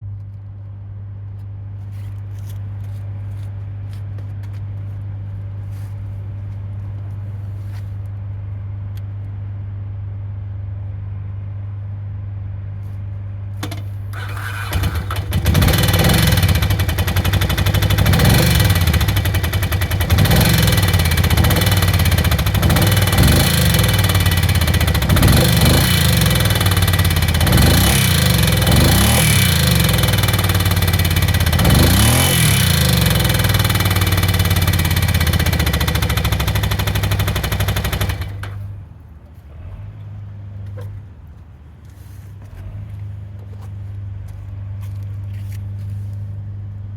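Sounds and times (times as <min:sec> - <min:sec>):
rapid mechanical ticking: 0:13.6 - 0:38.6
motorcycle engine running: 0:13.6 - 0:38.8.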